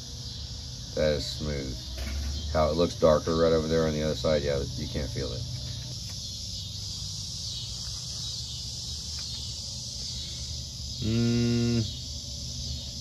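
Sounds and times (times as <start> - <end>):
high-pitched hiss: 0.0 - 13.0
buzzing tone: 10.9 - 12.0.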